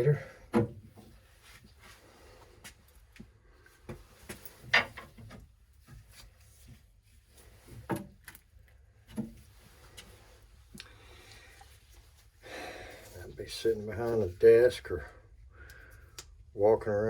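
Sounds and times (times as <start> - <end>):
knocks and clunks of tools: 4.7 - 5.4.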